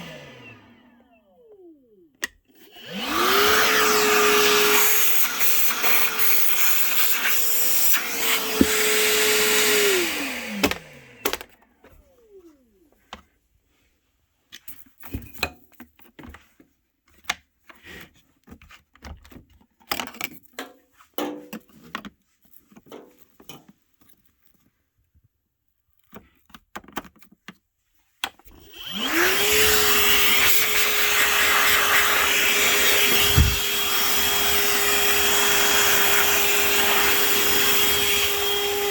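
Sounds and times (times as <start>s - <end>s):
vacuum motor spinning down: 0.0s - 12.9s, 28.5s - 38.9s
shop vacuum whine: 0.0s - 13.0s, 28.5s - 38.9s.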